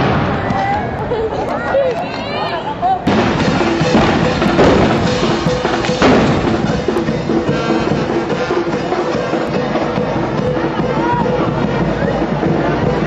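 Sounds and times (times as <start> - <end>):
carnival band music: 3.0 - 13.0.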